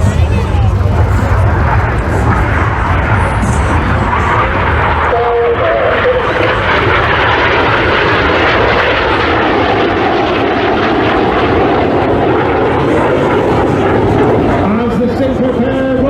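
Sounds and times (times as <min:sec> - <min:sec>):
loud jet noise: 0:00.0 - 0:16.0.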